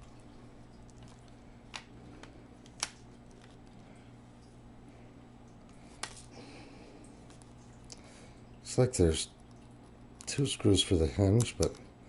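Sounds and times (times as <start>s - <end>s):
faint low hum: 0.0s - 12.0s
laptop parts clicking: 1.7s - 3.6s.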